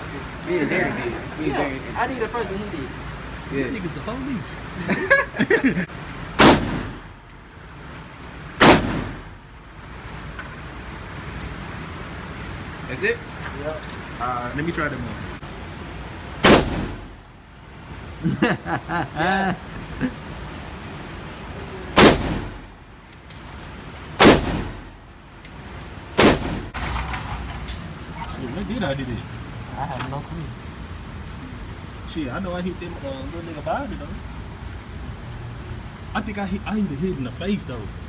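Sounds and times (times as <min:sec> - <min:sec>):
gunshots with echo: 0:06.4 - 0:07.0, 0:08.6 - 0:09.2, 0:16.4 - 0:17.0, 0:24.2 - 0:24.8, 0:26.2 - 0:26.7
light metallic clinks: 0:07.3 - 0:08.6, 0:09.6 - 0:10.6, 0:23.1 - 0:24.2, 0:25.4 - 0:26.2.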